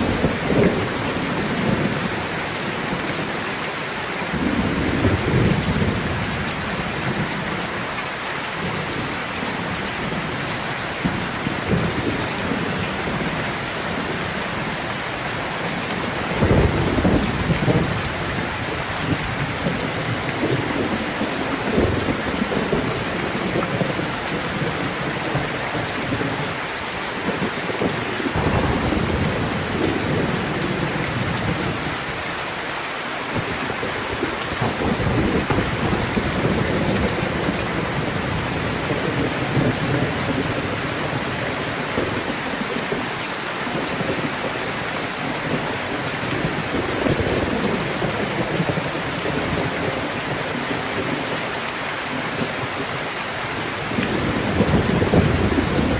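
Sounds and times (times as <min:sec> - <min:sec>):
steady rain falling: 0:00.0 - 0:55.9
low thunder rumbles: 0:04.3 - 0:07.8, 0:08.6 - 0:26.6, 0:27.2 - 0:32.5, 0:33.4 - 0:42.2, 0:53.6 - 0:55.9.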